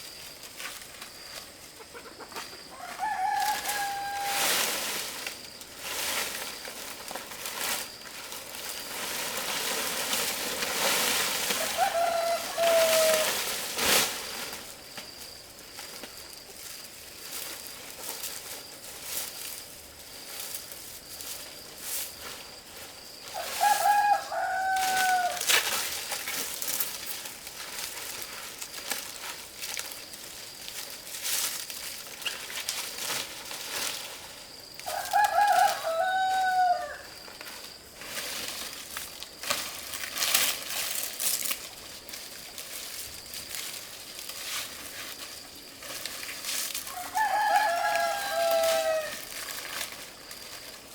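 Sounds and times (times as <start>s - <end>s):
rooster crowing: 2.0s - 4.7s, 11.5s - 13.4s, 23.3s - 25.5s, 34.8s - 37.2s, 46.8s - 49.3s.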